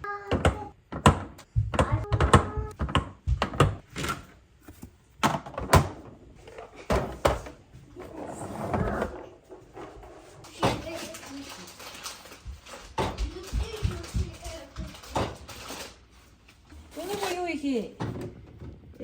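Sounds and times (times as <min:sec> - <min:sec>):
clunks and knocks of containers: 0:00.2 - 0:07.6, 0:12.5 - 0:15.5, 0:18.0 - 0:19.0.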